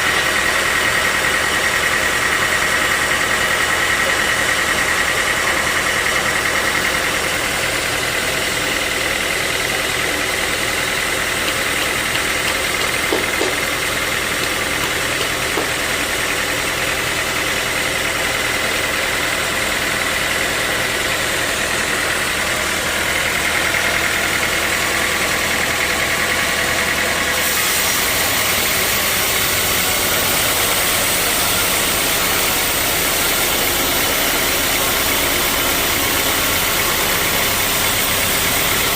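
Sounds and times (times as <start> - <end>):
sawmill saw whining: 0.0 - 38.9.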